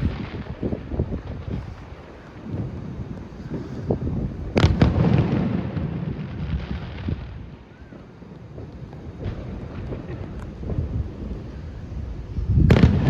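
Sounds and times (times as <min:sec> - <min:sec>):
rumbling echo: 0:00.0 - 0:07.8, 0:08.6 - 0:13.0
fireworks loud bangs: 0:00.0 - 0:13.0
fireworks low thuds: 0:00.0 - 0:13.0.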